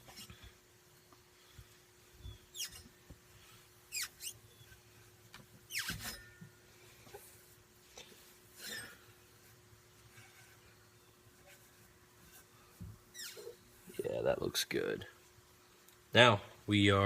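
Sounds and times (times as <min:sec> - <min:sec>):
rag squeaking on metal tube: 0:00.0 - 0:00.5, 0:02.3 - 0:06.5, 0:08.6 - 0:09.1, 0:11.4 - 0:14.1.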